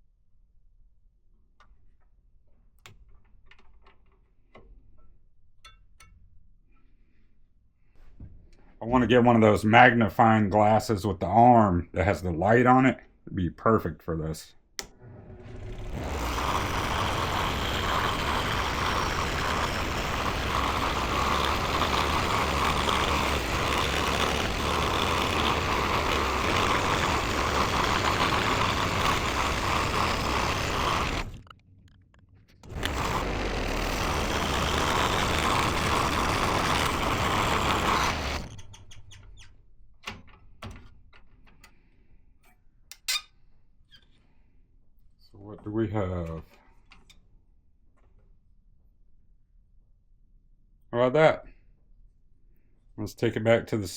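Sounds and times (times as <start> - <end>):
scroll saw cutting wood: 14.8 - 31.5, 32.6 - 38.9.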